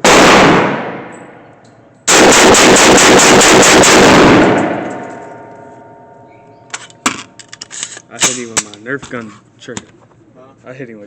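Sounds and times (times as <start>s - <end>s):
pistol shots with echo: 0.0s - 1.5s, 2.1s - 5.5s.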